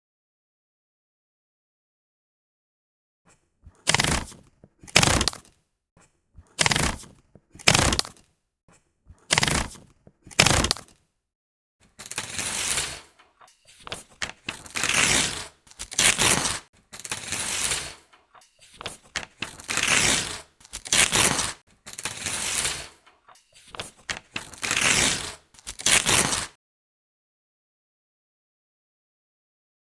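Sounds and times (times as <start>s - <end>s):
paper tearing: 3.7s - 5.6s, 6.5s - 8.3s, 9.2s - 11.0s, 11.9s - 26.6s.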